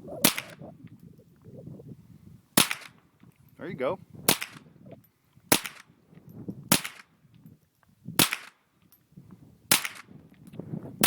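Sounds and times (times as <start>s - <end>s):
rifle shots with echo: 6.7s - 7.1s.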